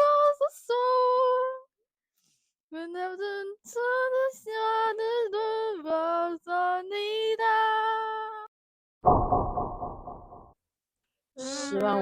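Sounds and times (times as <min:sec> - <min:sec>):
woman singing unaccompanied: 0:00.0 - 0:01.7, 0:02.7 - 0:08.5, 0:11.4 - 0:12.0.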